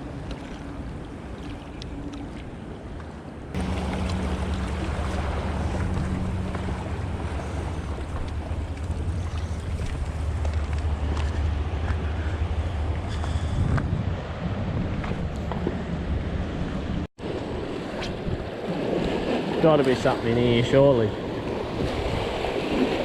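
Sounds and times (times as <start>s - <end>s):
seawater washing against rocks: 3.5s - 13.7s, 17.2s - 23.0s
wind buffeting microphone: 3.5s - 20.2s, 21.1s - 23.0s.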